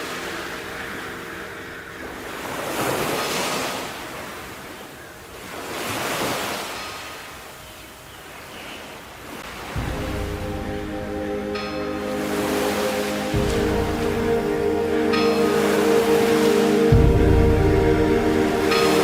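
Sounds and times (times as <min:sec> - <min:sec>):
sea waves washing in: 0:00.0 - 0:07.5, 0:09.2 - 0:19.0
calm music with low notes: 0:09.7 - 0:19.0.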